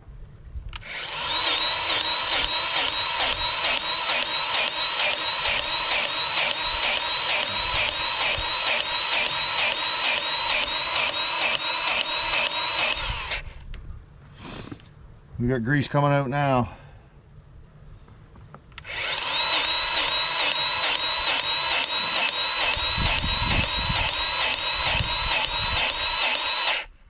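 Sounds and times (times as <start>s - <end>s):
grease gun pump whining: 0.8s - 13.6s, 18.8s - 27.0s.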